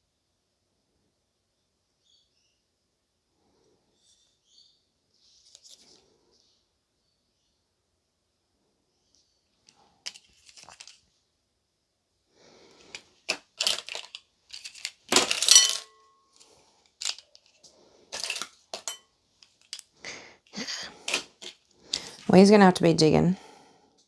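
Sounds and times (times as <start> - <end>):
small hard objects set down: 10.1 - 11.0, 12.8 - 16.0, 17.0 - 17.6, 18.2 - 19.9, 21.0 - 22.3.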